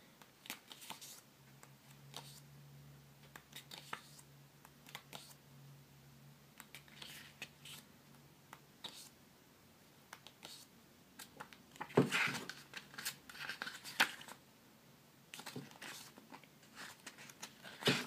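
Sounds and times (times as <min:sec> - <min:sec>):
paper pages rustling: 0:11.7 - 0:14.4, 0:15.4 - 0:18.0.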